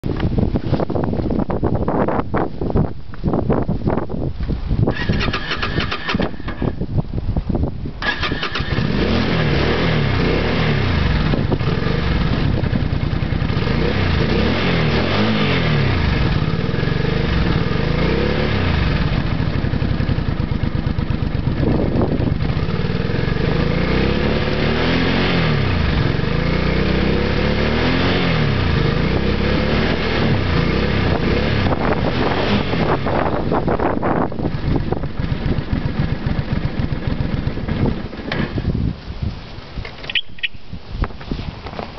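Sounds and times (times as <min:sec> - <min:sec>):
wind on microphone: 0:00.0 - 0:27.2, 0:27.9 - 0:41.9
motorcycle engine revving: 0:04.9 - 0:06.8, 0:08.0 - 0:38.9.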